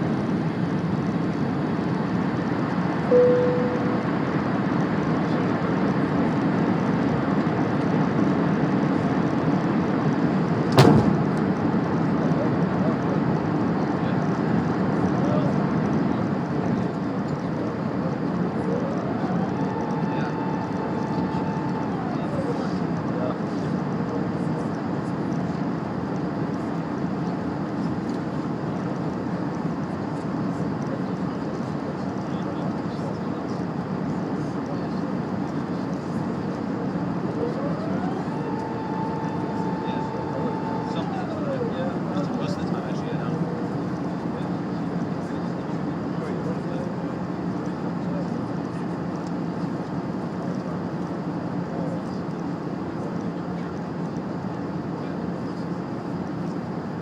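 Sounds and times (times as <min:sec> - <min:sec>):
airplane cabin engine rumble: 0:00.0 - 0:57.0
airliner landing: 0:03.1 - 0:08.3, 0:10.7 - 0:13.6, 0:16.5 - 0:24.9, 0:35.5 - 0:42.8
loud bang of hard touchdown: 0:10.8 - 0:11.5.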